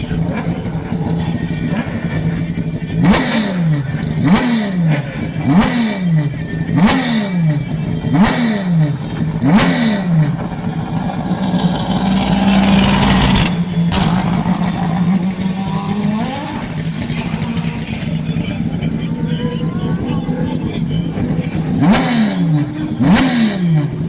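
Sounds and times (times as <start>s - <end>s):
race cars passing: 0.0s - 24.0s
engine with rising rush of noise: 10.0s - 18.4s.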